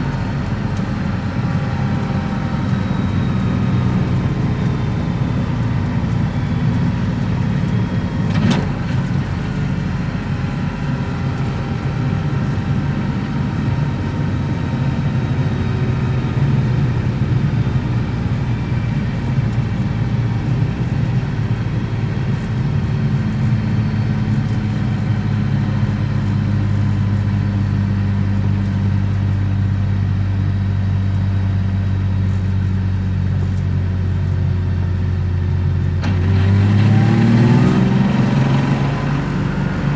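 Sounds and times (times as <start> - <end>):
car engine droning: 0.0 - 39.9.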